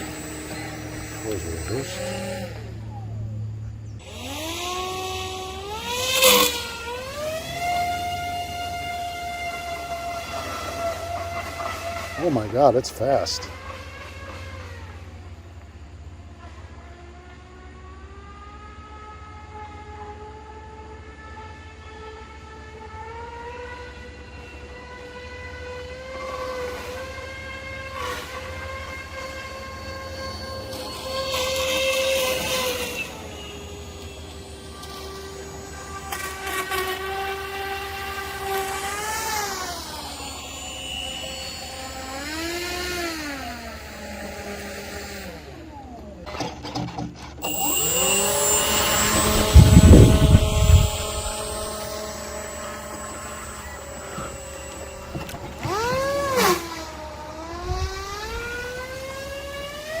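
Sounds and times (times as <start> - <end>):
model airboat propeller buzzing: 0.0 - 20.3, 21.5 - 60.0.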